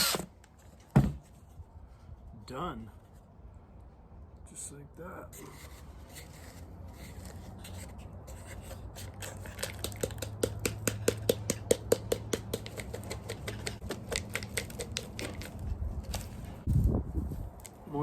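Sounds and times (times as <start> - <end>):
hollow knocks and scrapes in gourd: 5.4 - 16.7.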